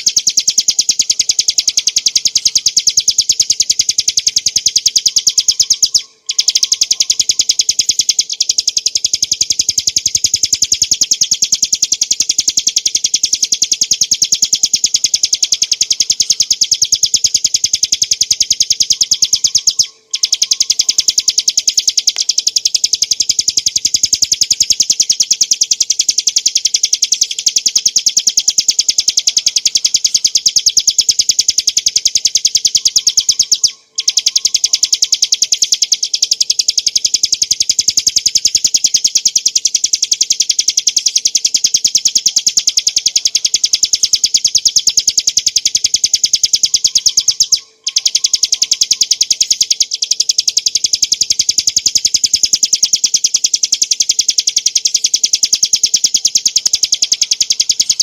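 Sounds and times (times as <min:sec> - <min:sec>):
small bird singing high sharp notes: 0:00.0 - 0:58.0.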